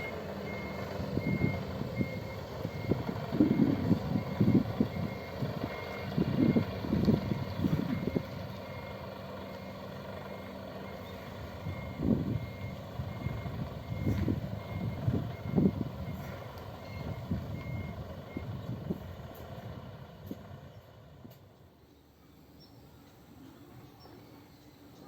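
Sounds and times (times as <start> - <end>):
bus backup alarm beeps: 0.0 - 19.1
bus engine running: 0.0 - 25.0.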